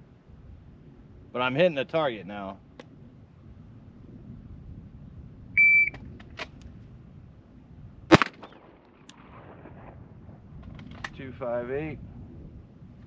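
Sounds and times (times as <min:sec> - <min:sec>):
shot timer beep: 0:05.6 - 0:06.0
pistol shot: 0:08.1 - 0:10.0.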